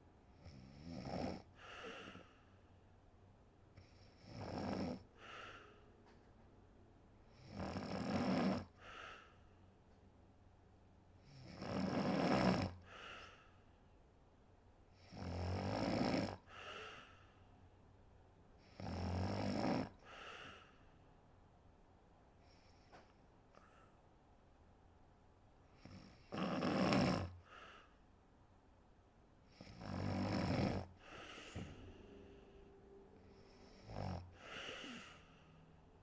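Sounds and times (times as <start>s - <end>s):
woman snoring: 0.4s - 2.2s, 3.8s - 5.5s, 7.4s - 8.8s, 11.2s - 12.9s, 15.0s - 16.8s, 18.7s - 20.6s, 25.8s - 27.4s, 29.5s - 35.8s.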